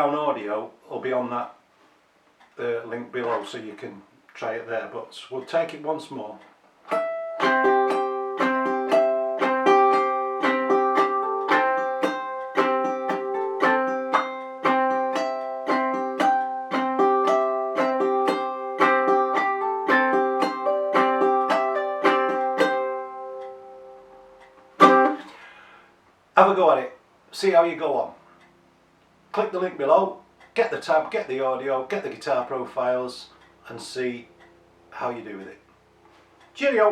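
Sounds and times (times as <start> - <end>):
ukulele picking and strumming: 6.9 - 25.4.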